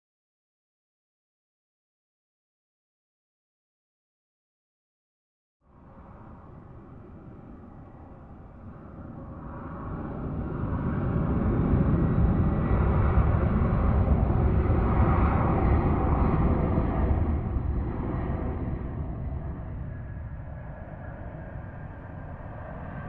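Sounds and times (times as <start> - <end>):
jet engine roar: 5.7 - 23.0.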